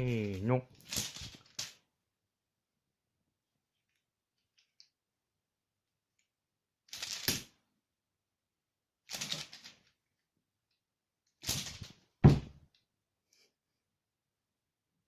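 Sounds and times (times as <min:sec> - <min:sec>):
kitten clattering and scrabbling: 0:00.0 - 0:01.8.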